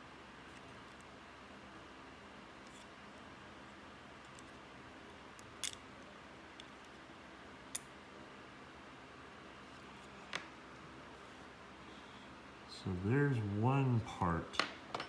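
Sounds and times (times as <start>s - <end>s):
low steady hiss: 0.0s - 15.0s
small plastic parts clicking: 5.4s - 5.8s.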